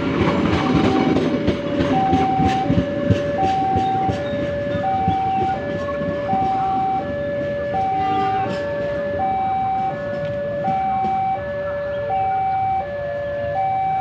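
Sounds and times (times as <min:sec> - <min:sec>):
engines and traffic rumble: 0:00.0 - 0:14.0
two-tone warning siren: 0:00.4 - 0:14.0.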